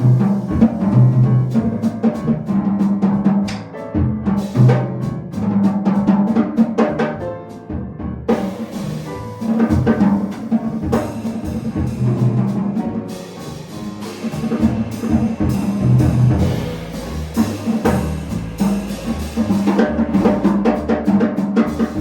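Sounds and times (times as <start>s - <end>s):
drum kit hits: 0.0s - 22.0s
jazz piano: 0.0s - 22.0s
walking bass line: 14.7s - 21.2s.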